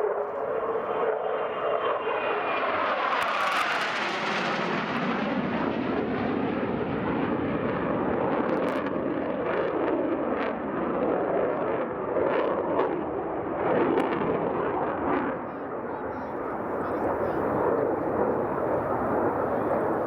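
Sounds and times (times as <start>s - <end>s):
jet engine rumble: 13.1s - 20.0s.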